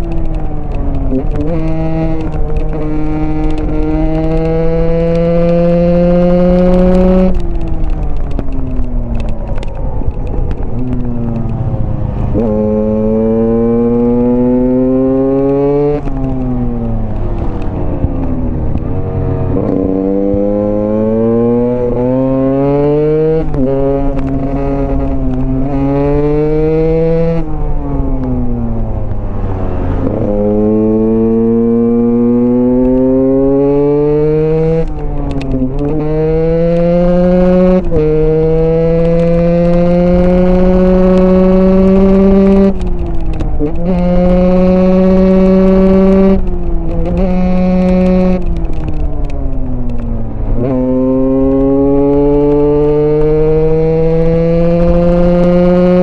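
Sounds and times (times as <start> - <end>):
two-stroke engine revving: 50.6 - 56.0.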